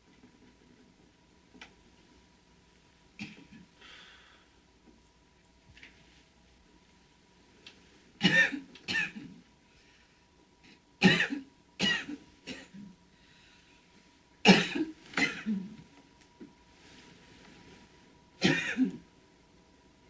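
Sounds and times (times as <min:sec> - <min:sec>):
woman coughing: 0:08.2 - 0:09.3, 0:11.0 - 0:12.8, 0:14.5 - 0:15.8, 0:18.4 - 0:19.0.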